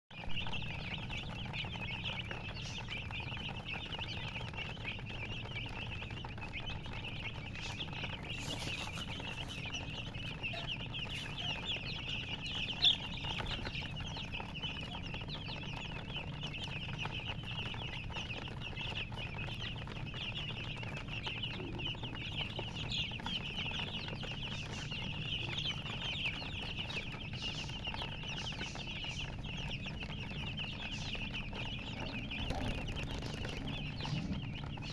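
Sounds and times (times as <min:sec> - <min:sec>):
baby chicks peeping: 0:00.1 - 0:34.9
steady low hum: 0:28.9 - 0:34.9.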